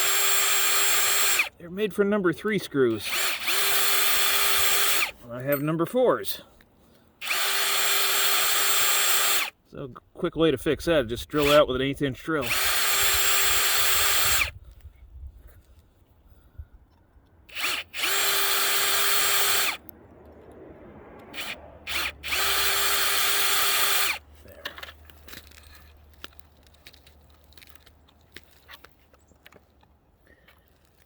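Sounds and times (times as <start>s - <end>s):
power drill drilling into metal: 0.0s - 1.5s, 3.0s - 5.2s, 7.2s - 9.6s, 11.4s - 11.6s, 12.4s - 14.6s, 17.5s - 19.8s, 21.3s - 24.2s.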